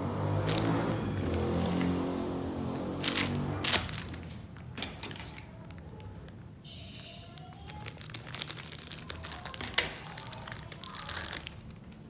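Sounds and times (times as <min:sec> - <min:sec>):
packaging rustling: 0:03.0 - 0:04.4, 0:07.4 - 0:12.0.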